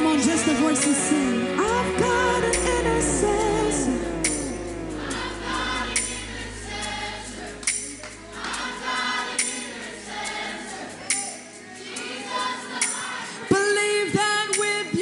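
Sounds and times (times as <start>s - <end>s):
low instrumental drone: 1.6s - 10.1s
congregation singing: 1.6s - 13.8s.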